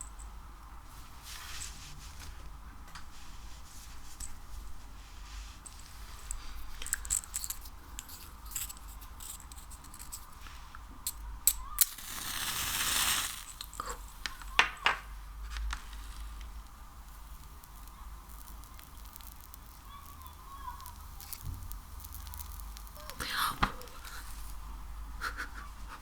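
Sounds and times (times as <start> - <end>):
crackling tearing slime: 15.7 - 24.6
sticky slime handling sounds: 15.8 - 24.6.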